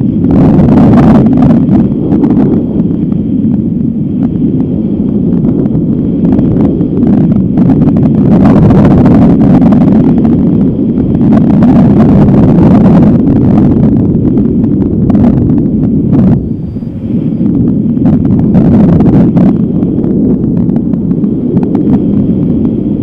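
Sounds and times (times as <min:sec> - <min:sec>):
strong wind buffeting microphone: 0:00.0 - 0:23.0.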